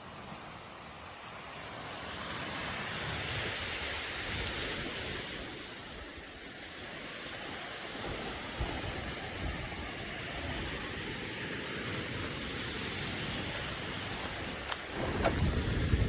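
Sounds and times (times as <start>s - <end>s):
surf: 0.0s - 16.0s
wind buffeting microphone: 8.0s - 16.0s.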